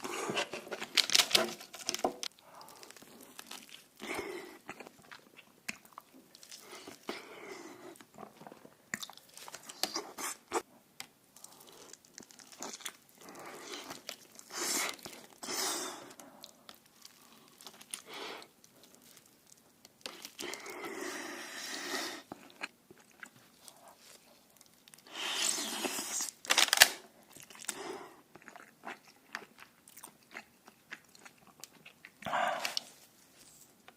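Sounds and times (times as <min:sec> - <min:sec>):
chewing and crunching food: 0:00.0 - 0:10.7, 0:11.3 - 0:33.9
wet mouth clicks: 0:32.2 - 0:32.9.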